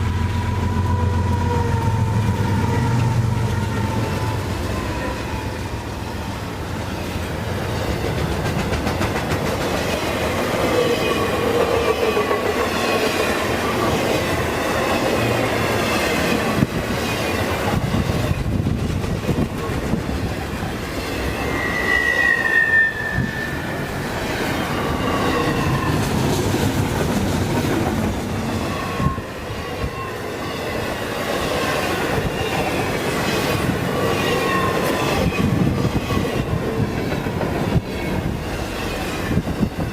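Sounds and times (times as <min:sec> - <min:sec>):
train cars rumbling and clacking: 0:00.0 - 0:39.9
high wheel squeal: 0:20.9 - 0:26.0, 0:28.5 - 0:31.0.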